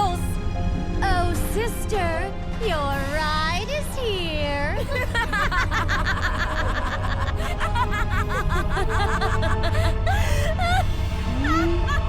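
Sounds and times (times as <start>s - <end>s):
cartoon soundtrack music: 0.0s - 12.0s
character laughing: 4.8s - 10.8s, 11.4s - 12.0s.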